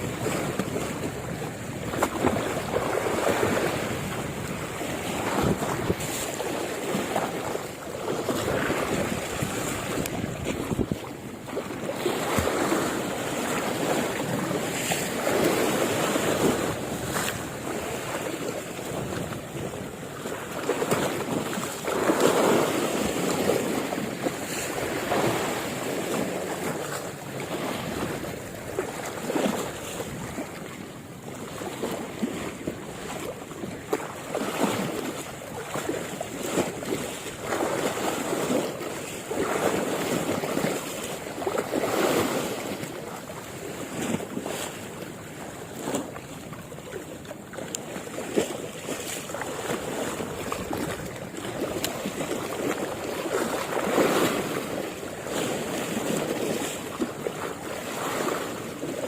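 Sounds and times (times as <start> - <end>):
wind buffeting microphone: 0.0 - 26.9, 49.6 - 58.9
sea waves washing in: 0.0 - 59.0.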